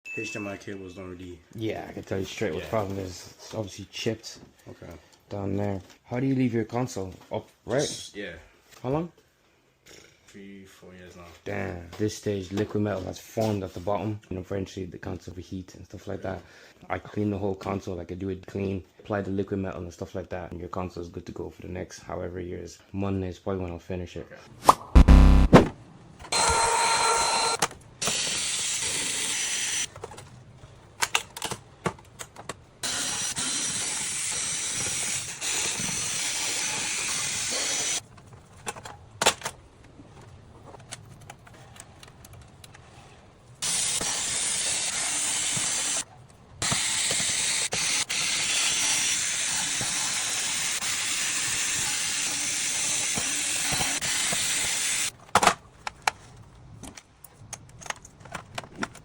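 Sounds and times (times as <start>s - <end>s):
compressed air hissing: 43.6s - 46.0s, 46.6s - 55.1s.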